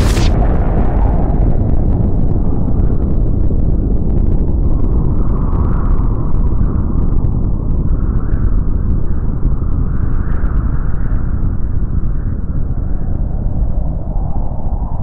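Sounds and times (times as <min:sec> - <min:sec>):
bright blast hiss: 0:00.0 - 0:00.4
deep explosion rumble: 0:00.0 - 0:15.0.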